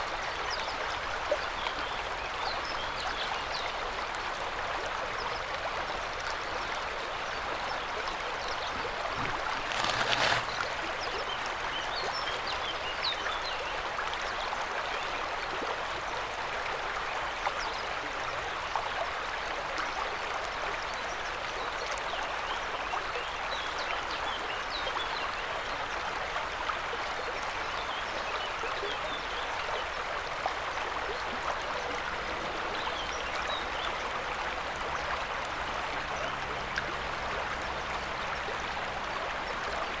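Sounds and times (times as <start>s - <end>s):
river water rushing: 6.4s - 12.3s.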